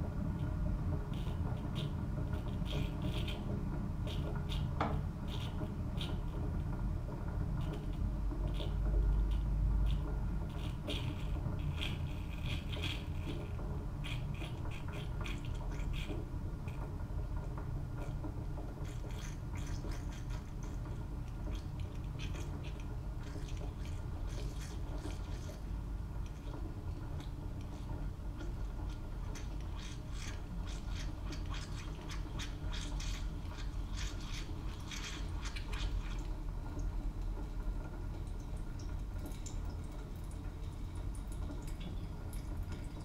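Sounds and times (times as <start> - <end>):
coffee maker heating water: 0.0 - 43.0
small ticks and crackles: 7.6 - 16.9, 18.0 - 37.4.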